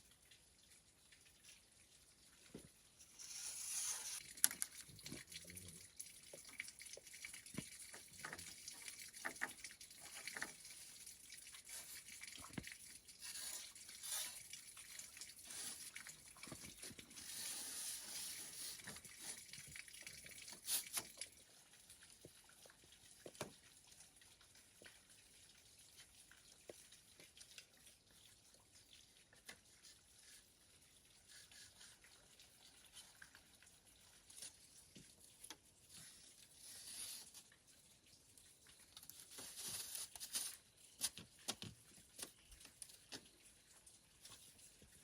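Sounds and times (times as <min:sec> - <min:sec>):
tap water running into sink: 0:00.0 - 0:37.7
small knocks and clicks: 0:40.1 - 0:43.3.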